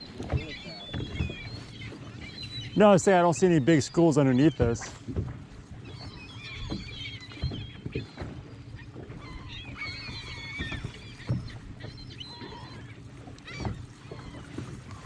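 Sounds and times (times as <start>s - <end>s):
gulls calling: 0.0s - 15.0s.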